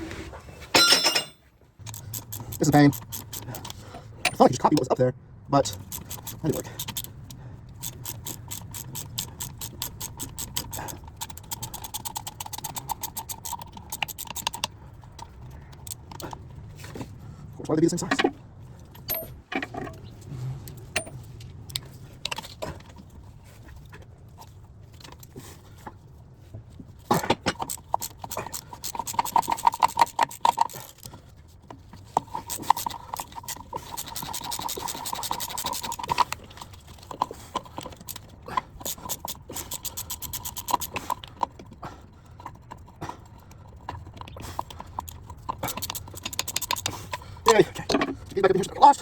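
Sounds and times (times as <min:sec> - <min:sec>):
metal tools clinking and scraping: 0:00.6 - 0:05.0, 0:05.6 - 0:25.4, 0:31.8 - 0:41.5, 0:42.4 - 0:49.0
ringing metallic tone: 0:00.8 - 0:01.4.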